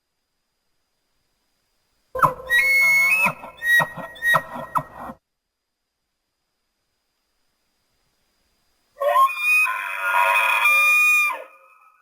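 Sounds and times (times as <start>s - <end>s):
high whistling bugle-like call: 2.2s - 5.2s, 9.0s - 12.0s.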